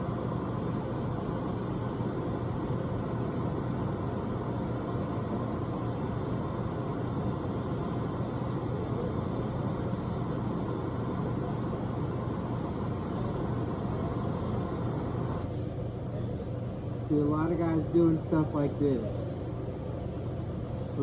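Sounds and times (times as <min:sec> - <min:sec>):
torch flame hissing: 0:00.0 - 0:15.8.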